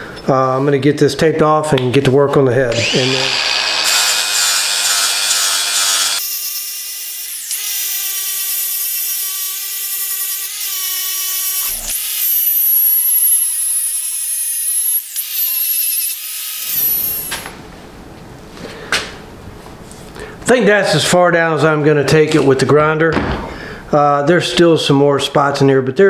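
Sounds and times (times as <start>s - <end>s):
power grinder grinding metal: 2.7s - 17.4s.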